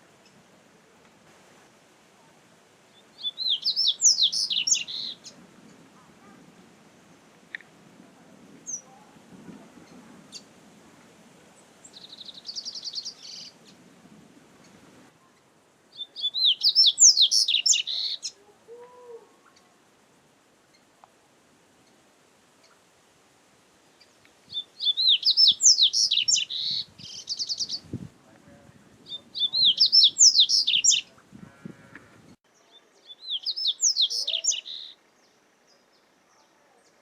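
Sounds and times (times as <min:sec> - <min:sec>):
bird warbling song: 0:02.9 - 0:05.8, 0:11.8 - 0:13.8, 0:14.6 - 0:18.4, 0:23.9 - 0:28.0, 0:29.0 - 0:31.4, 0:32.6 - 0:37.0.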